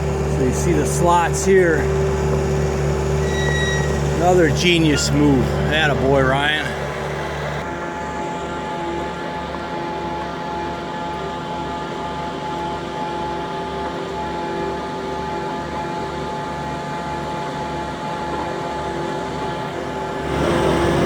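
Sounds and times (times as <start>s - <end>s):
skid steer engine running: 0.0s - 21.0s.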